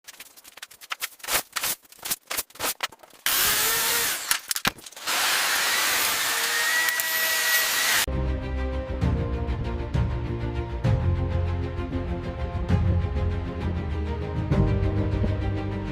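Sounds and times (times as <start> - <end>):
power tool running: 3.3 - 4.4, 5.0 - 8.1.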